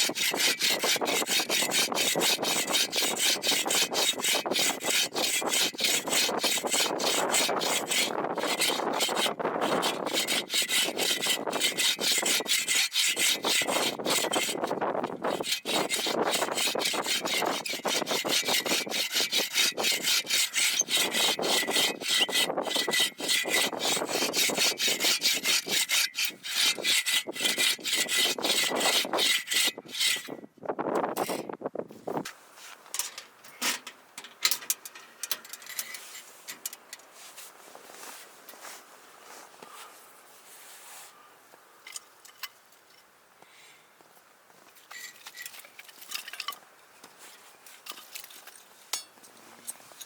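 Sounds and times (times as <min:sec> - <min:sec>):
hand saw cutting wood: 0:00.0 - 0:30.4.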